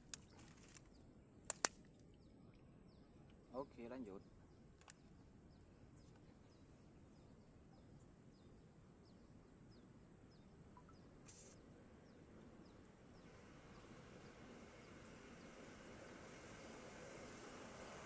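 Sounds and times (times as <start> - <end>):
faint short chirps: 10.8 - 11.6
high thin insect buzz: 11.2 - 11.6.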